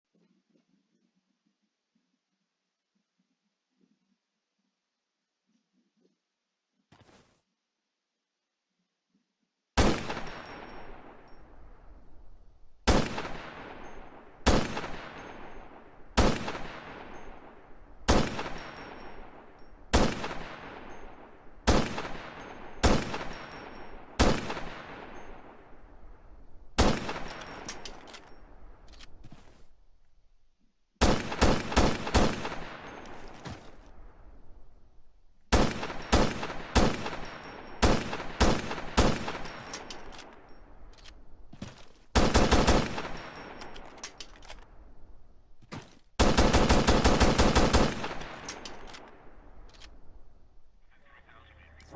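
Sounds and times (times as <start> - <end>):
rapid rifle shots: 9.8 - 11.6, 12.8 - 25.8, 26.7 - 29.2, 31.0 - 33.9, 35.5 - 41.1, 42.1 - 44.8, 45.8 - 50.1
rifle shots with echo: 9.8 - 29.2, 31.0 - 41.5, 42.1 - 45.3, 46.2 - 50.7.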